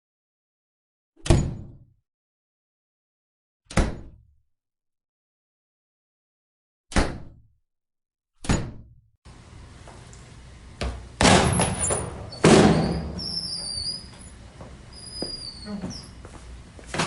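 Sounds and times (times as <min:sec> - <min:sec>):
door slamming: 0:10.9 - 0:14.1.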